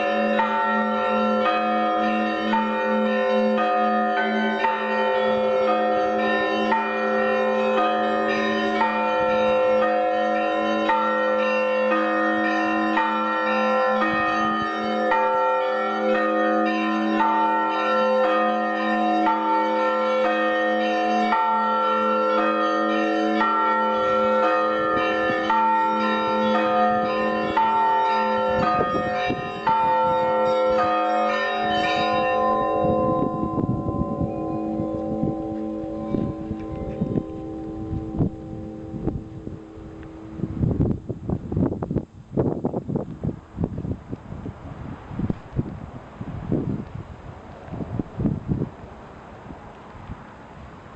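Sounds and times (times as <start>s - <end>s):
small bells ringing: 0.0s - 39.2s
deep bell humming: 23.4s - 40.9s.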